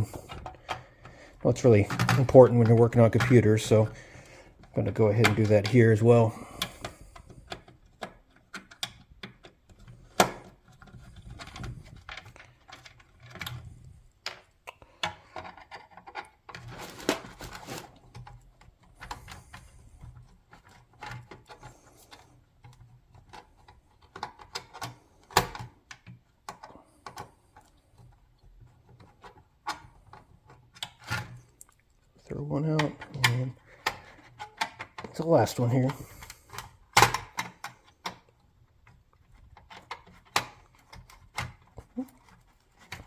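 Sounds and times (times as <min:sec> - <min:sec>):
screwdriver clicking and scraping: 0:06.5 - 0:31.6.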